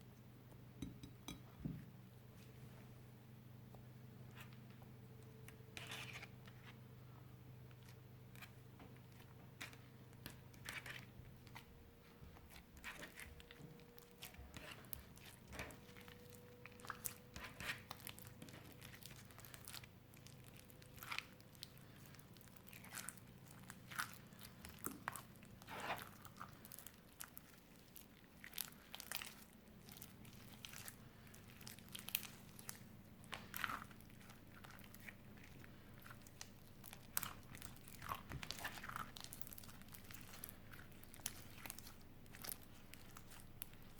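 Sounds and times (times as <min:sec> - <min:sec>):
slime crackling and squishing: 0:12.3 - 0:43.9.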